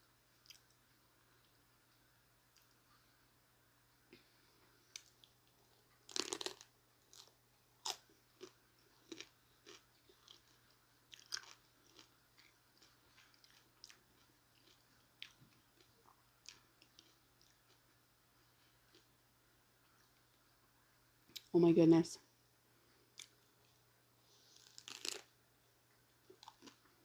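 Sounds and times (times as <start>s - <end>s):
taco bite crunch: 4.9s - 18.0s, 24.5s - 25.3s, 26.3s - 27.0s
chewing with mouth clicks: 4.9s - 19.1s, 23.1s - 23.8s, 24.5s - 25.3s, 26.2s - 27.0s.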